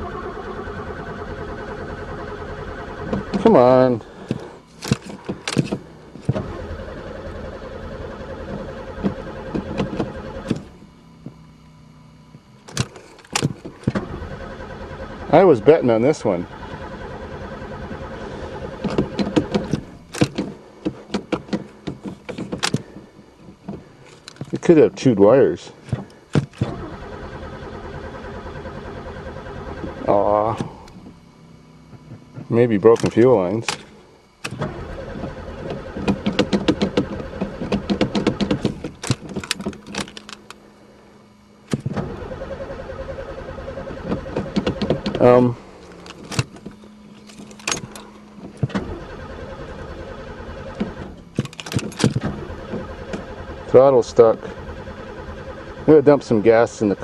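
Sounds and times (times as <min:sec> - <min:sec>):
starter cranking engine: 0:00.0 - 0:10.7, 0:12.7 - 0:25.2, 0:25.8 - 0:31.1, 0:32.6 - 0:40.6, 0:41.7 - 0:57.0
sharp clicks and knocks: 0:12.6 - 0:14.1, 0:18.8 - 0:24.7, 0:31.9 - 0:40.6, 0:44.0 - 0:48.9, 0:50.7 - 0:53.3.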